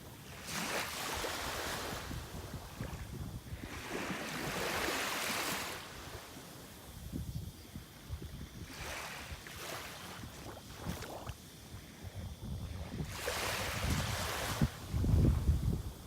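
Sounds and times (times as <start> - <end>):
waves surging onto beach: 0.0 - 7.1, 7.8 - 12.3, 12.9 - 16.0
wind buffeting microphone: 1.4 - 5.0, 6.9 - 9.4, 10.2 - 16.0.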